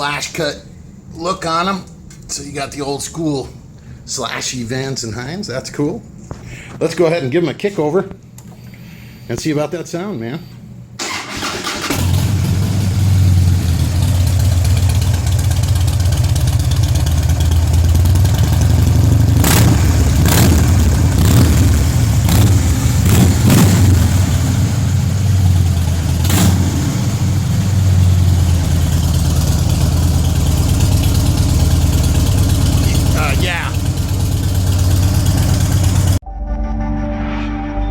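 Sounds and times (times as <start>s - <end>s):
motorcycle engine idling: 12.0s - 36.2s.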